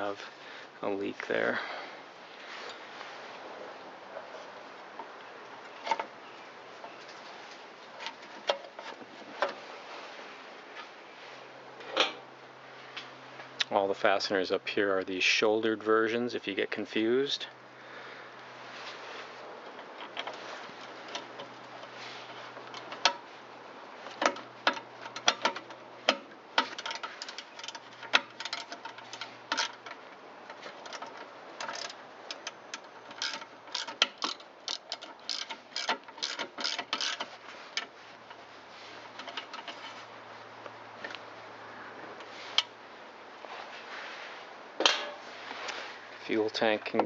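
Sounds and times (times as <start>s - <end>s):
sharp metal clicks: 24.1s - 37.9s
ratchet wrench clicking: 30.8s - 37.3s.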